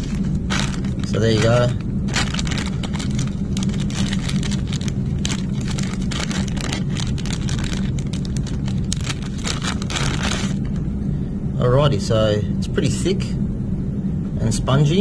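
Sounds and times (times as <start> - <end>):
plastic packaging crinkling: 0.0 - 10.9
steady low hum: 0.0 - 15.0.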